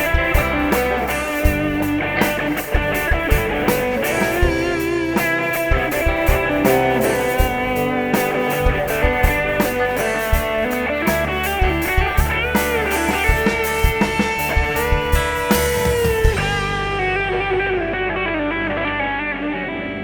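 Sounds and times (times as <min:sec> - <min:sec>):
steady drum beat: 0:00.0 - 0:17.2
bass guitar: 0:00.0 - 0:20.0
electric guitar lead notes: 0:00.0 - 0:20.0.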